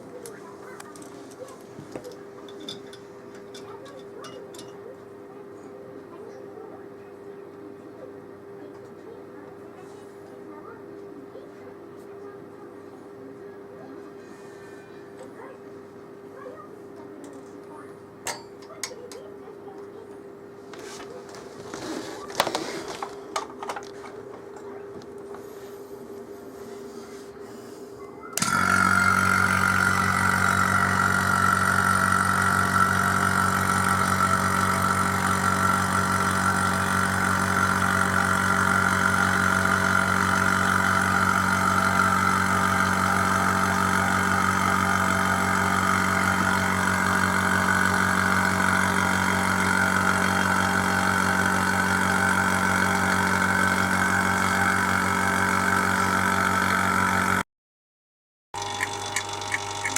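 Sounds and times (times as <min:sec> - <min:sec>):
electric machine humming and whining: 0:28.2 - 0:57.4, 0:58.6 - 0:59.9.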